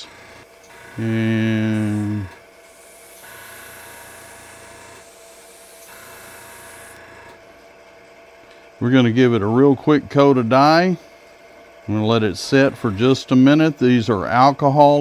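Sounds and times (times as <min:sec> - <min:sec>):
airbrush hissing: 0:00.0 - 0:07.2
wood lathe humming: 0:00.0 - 0:07.4, 0:11.9 - 0:14.2.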